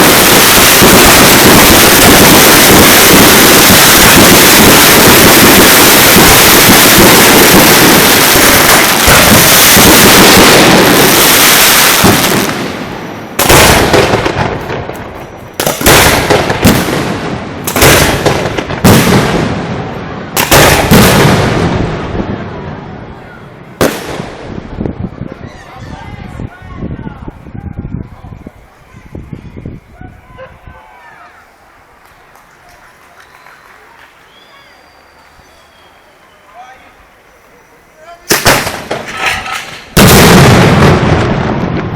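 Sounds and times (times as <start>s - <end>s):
loud firework bangs: 0.0s - 25.2s, 38.3s - 41.9s
firecracker barrage: 0.0s - 41.9s.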